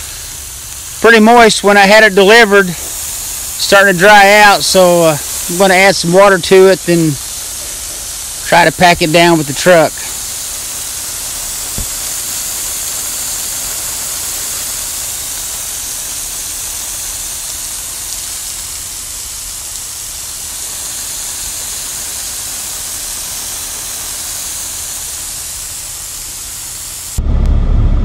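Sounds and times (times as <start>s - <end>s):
water spraying onto gravel: 0.0s - 27.2s.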